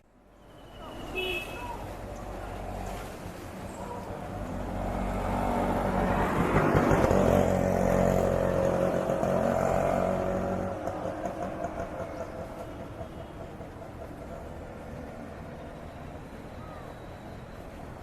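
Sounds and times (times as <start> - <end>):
vehicle driving past: 4.5 - 13.1.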